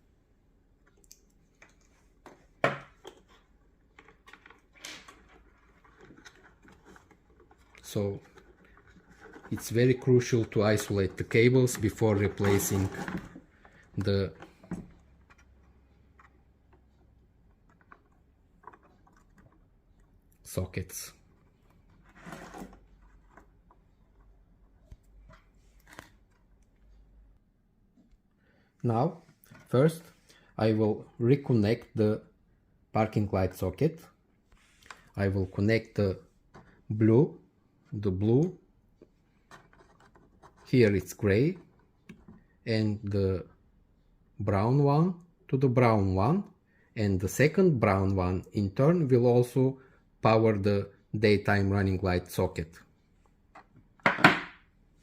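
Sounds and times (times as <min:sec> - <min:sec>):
plastic parts clicking and tapping: 0:11.9 - 0:20.2.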